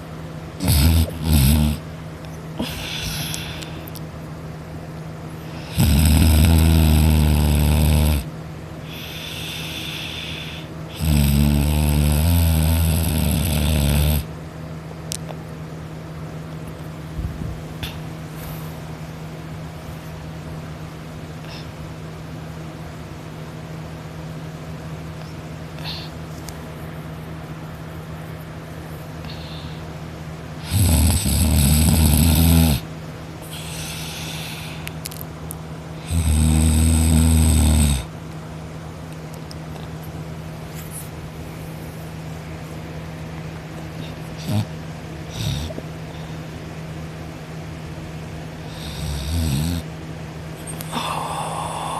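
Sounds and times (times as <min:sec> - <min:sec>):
steady low hum: 0:00.0 - 0:51.9
person snoring: 0:00.6 - 0:01.8, 0:02.6 - 0:03.9, 0:05.5 - 0:08.3, 0:08.9 - 0:14.3, 0:30.6 - 0:32.8, 0:33.4 - 0:34.9, 0:36.0 - 0:38.1, 0:44.1 - 0:44.7, 0:45.3 - 0:45.8, 0:48.7 - 0:49.9, 0:50.6 - 0:51.9.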